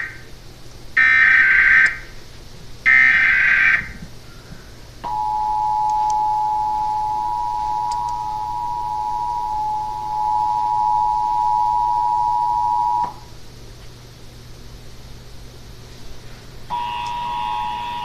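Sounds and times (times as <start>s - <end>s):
two-tone attention signal: 5.1s - 13.2s, 16.7s - 18.0s
screechy digital data tones: 16.8s - 18.0s.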